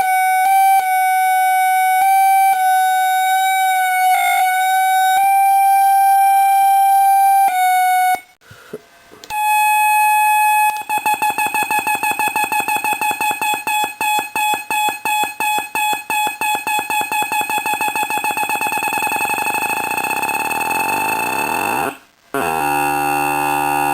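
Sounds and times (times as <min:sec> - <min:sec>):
electronic drone tone: 0:10.9 - 0:23.9
rapid electronic pulsing: 0:17.0 - 0:22.2.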